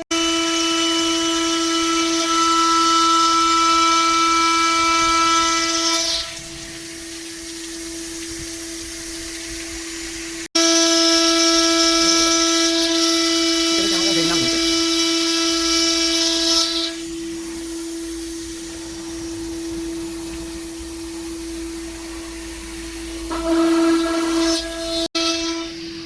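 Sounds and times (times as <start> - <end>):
saw high whine: 0.0 - 7.0, 10.6 - 26.0
saw hiss: 12.6 - 26.0.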